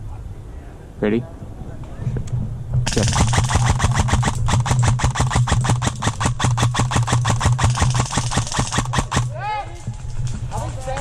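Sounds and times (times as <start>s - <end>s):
airsoft gun rapid clicks: 2.9s - 9.3s.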